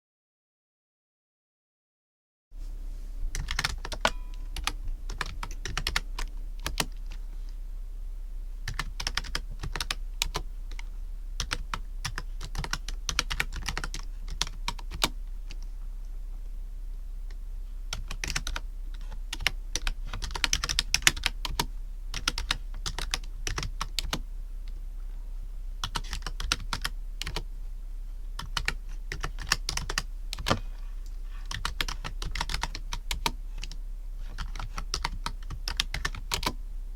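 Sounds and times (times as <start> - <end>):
steady low hum: 2.6 - 36.9
keyboard keys clicking: 3.3 - 7.2, 8.6 - 10.8, 11.4 - 15.7, 17.3 - 24.2, 25.8 - 27.4, 28.4 - 36.6.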